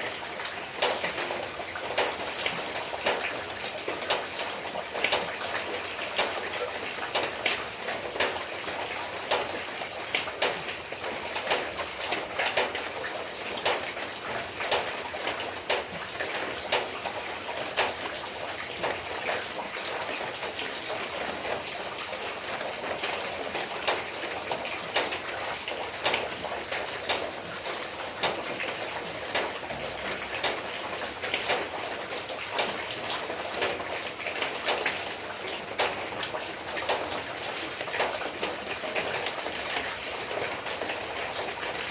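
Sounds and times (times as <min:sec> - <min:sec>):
raindrops hitting surfaces: 0:00.0 - 0:41.9.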